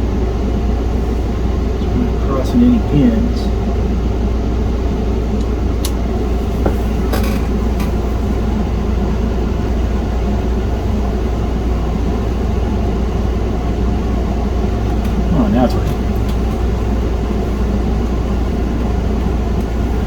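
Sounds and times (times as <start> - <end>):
low hum and rumble: 0.0 - 20.0.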